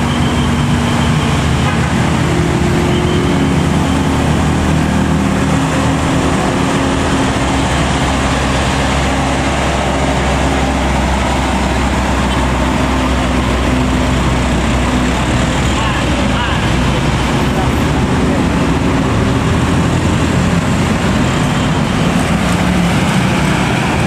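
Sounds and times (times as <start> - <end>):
heavy vehicles idling: 0.0 - 24.0
road noise: 0.0 - 24.0.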